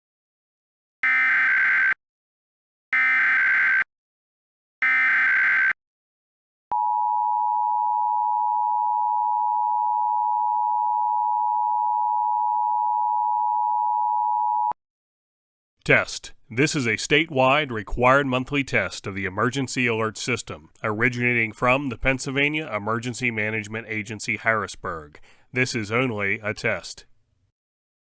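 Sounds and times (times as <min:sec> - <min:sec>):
digital data tone bursts: 0:01.0 - 0:02.0, 0:03.0 - 0:03.9, 0:04.8 - 0:05.8
two-tone attention signal: 0:01.0 - 0:02.0, 0:03.0 - 0:03.9, 0:04.8 - 0:05.8.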